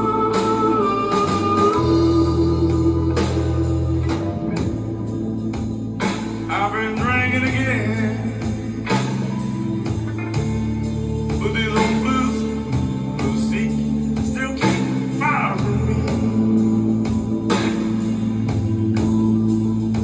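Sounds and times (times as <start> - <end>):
blues song with bass and guitar: 0.0 - 20.0
person singing: 11.4 - 16.8.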